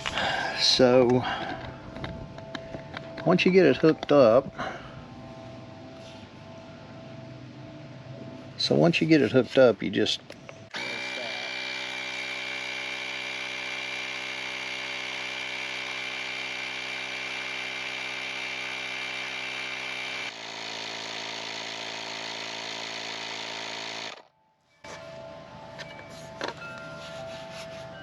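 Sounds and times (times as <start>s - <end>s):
air compressor buzzing: 10.6s - 24.3s.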